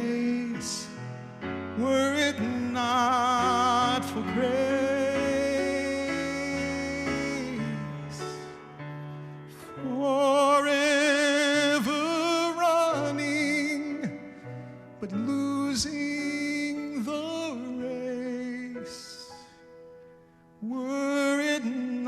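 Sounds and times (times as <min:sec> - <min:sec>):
person singing with vibrato: 0:00.0 - 0:19.6.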